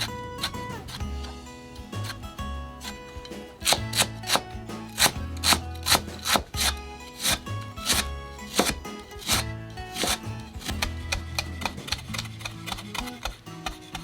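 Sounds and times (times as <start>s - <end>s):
background music: 0.0s - 14.0s
knife chopping on cutting board: 2.8s - 10.9s.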